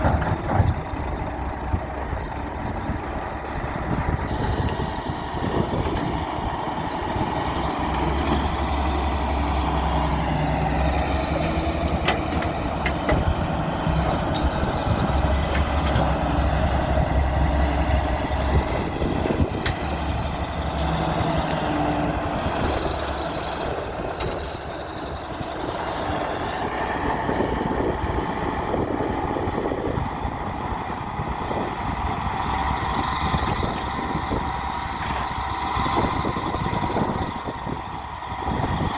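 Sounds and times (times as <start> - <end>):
excavator diesel engine humming: 0.0 - 38.9.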